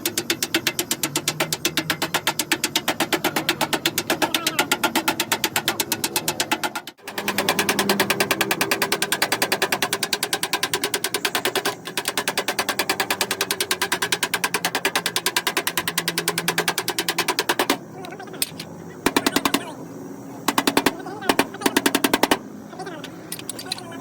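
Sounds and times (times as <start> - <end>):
hammer striking sheet metal: 0.0 - 17.9, 19.0 - 19.7, 20.4 - 23.0.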